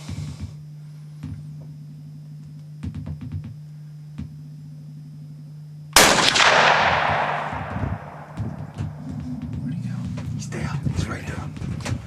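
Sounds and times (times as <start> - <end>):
steady low hum: 0.0 - 12.0
loud gunshot: 6.0 - 9.0.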